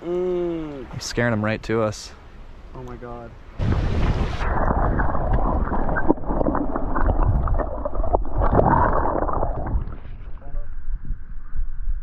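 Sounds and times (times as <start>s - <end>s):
water sloshing and splashing: 3.6s - 10.4s
wind buffeting microphone: 3.6s - 12.0s.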